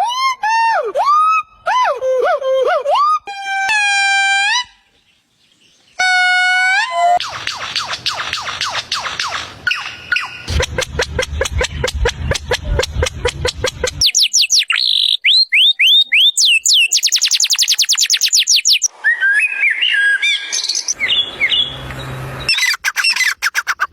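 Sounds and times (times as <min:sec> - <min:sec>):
bird calls: 0:07.2 - 0:10.6, 0:11.2 - 0:23.9.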